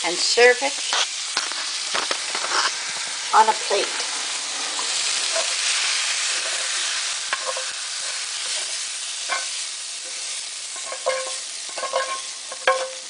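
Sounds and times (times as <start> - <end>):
food sizzling in a pan: 0.0 - 13.0
utensil scraping a pan: 0.9 - 2.8, 4.8 - 13.0.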